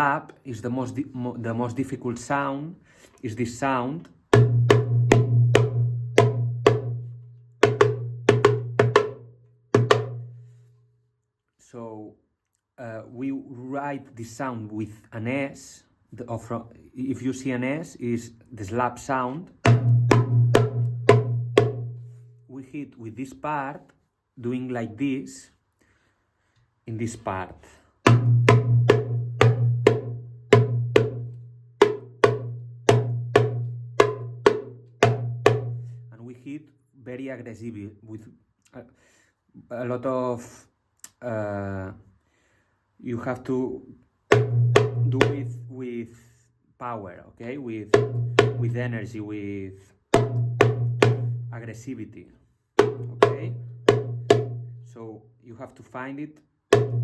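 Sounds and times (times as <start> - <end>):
deep ringing drum bass tone: 4.4 - 9.0, 19.7 - 22.0, 28.1 - 31.3, 44.4 - 45.4, 50.2 - 51.7
low drum ring: 4.4 - 9.1, 50.2 - 51.7.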